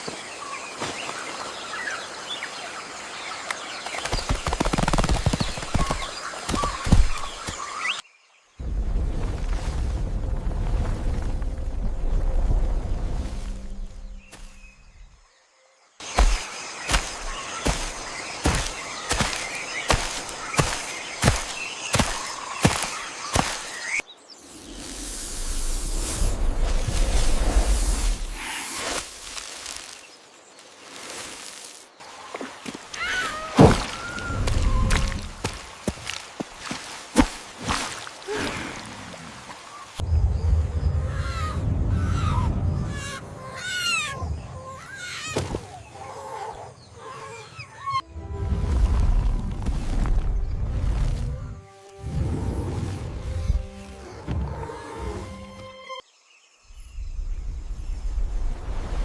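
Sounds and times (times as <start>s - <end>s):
low rumbling noise: 8.6s - 14.3s
jungle hiss: 8.6s - 15.0s, 16.0s - 40.2s.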